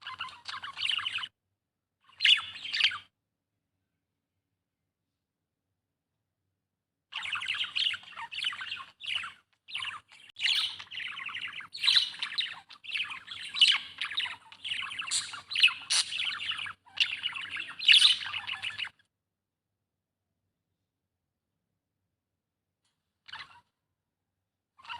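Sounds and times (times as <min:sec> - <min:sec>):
budgie chirping and warbling: 0:00.0 - 0:01.3, 0:02.1 - 0:03.1, 0:07.1 - 0:19.0.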